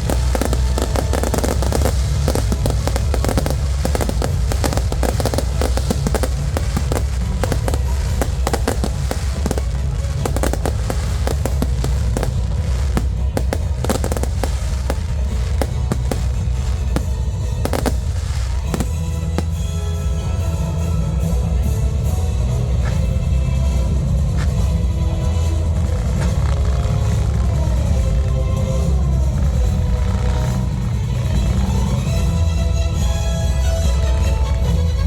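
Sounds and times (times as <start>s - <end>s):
loud music with heavy bass: 0.0s - 16.8s
fireworks bangs and crackling: 0.0s - 34.7s.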